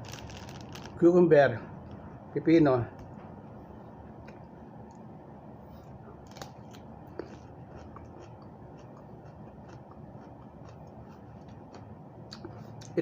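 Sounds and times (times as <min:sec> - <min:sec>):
low background noise: 0:00.0 - 0:13.0
person chewing cucumber: 0:06.2 - 0:13.0.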